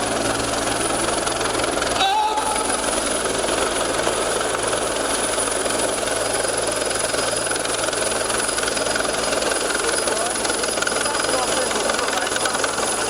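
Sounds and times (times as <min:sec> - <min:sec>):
helicopter rotor and engine: 0:00.0 - 0:13.0.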